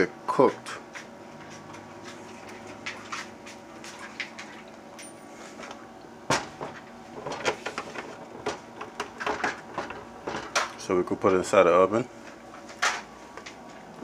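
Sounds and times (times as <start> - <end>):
faint steady hum: 0.0 - 14.0
kitchen items clicking and tapping: 6.3 - 10.9.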